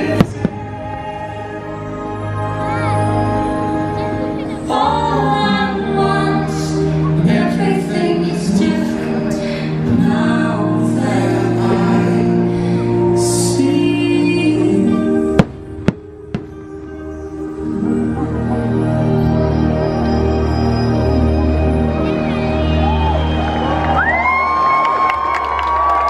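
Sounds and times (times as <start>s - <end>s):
orchestral notes: 0.0s - 24.3s
woman singing: 4.4s - 18.1s
choir: 4.7s - 15.2s.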